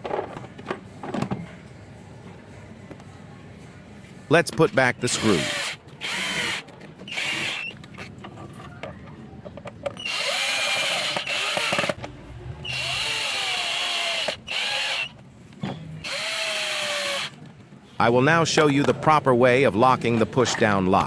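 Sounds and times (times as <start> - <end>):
electric drill driving screws: 5.1 - 7.7, 10.0 - 12.0, 12.6 - 15.2, 16.0 - 17.4.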